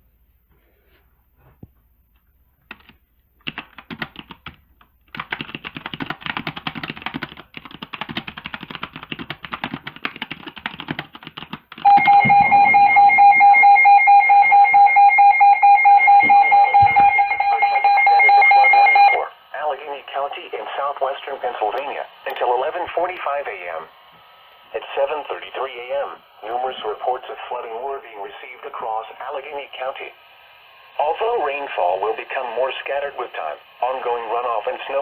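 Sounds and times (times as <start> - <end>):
steady alert tone: 11.8 - 19.2.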